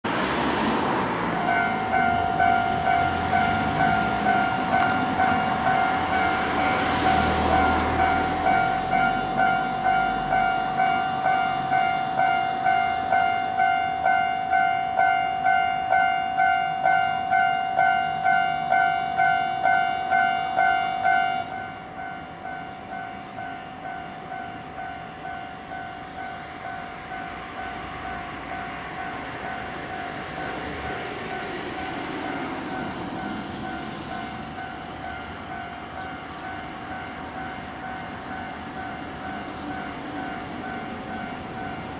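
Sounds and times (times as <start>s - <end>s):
train rumbling: 0.0s - 41.9s
level crossing alarm dinging: 1.3s - 27.9s.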